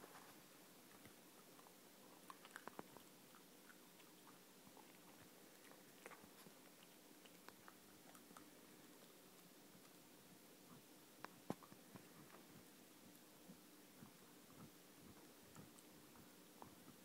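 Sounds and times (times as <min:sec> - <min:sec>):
dog chewing: 0:00.8 - 0:10.0, 0:10.7 - 0:17.0.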